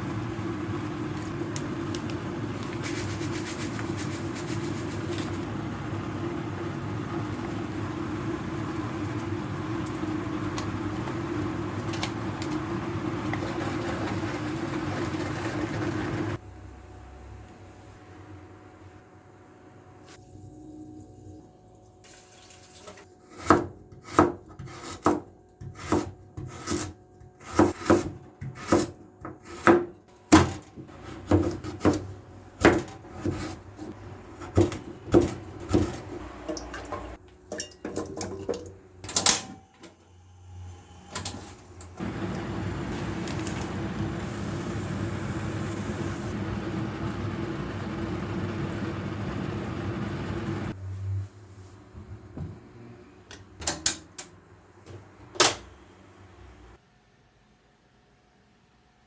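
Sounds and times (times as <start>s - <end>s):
knife chopping on wooden board: 23.3s - 33.5s.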